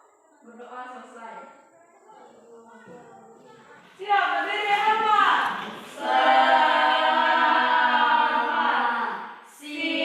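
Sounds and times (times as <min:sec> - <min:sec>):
students chanting in unison: 0:04.0 - 0:10.0.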